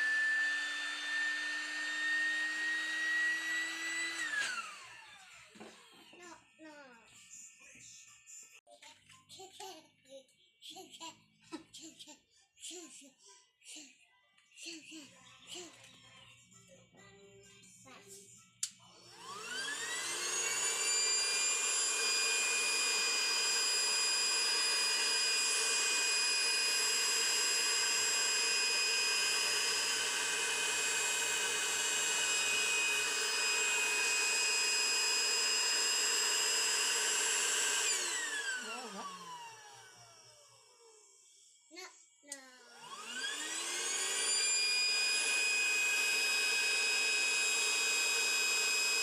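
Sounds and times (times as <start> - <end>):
electric air pump whining: 0.0 - 6.1, 19.0 - 41.3, 42.6 - 49.0.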